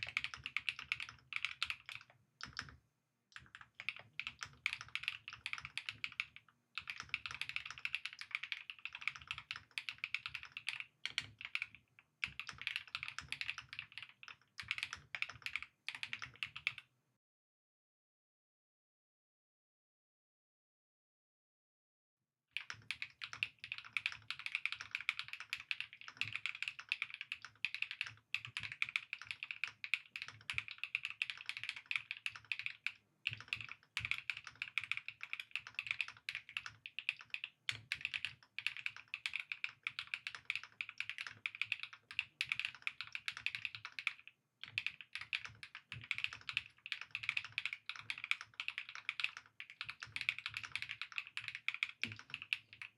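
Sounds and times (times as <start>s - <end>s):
mechanical keyboard typing: 0.0s - 2.8s, 3.4s - 16.8s, 22.6s - 52.9s.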